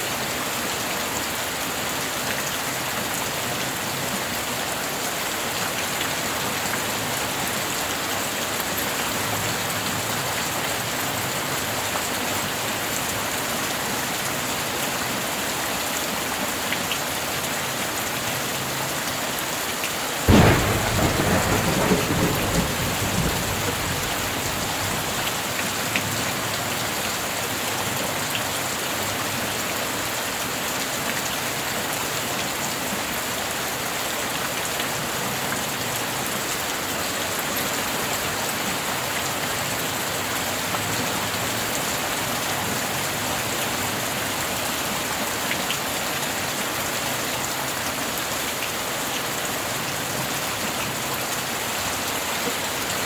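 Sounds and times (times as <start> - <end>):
steady rain: 0.0 - 53.0
thunderclap rumbling: 20.3 - 25.9.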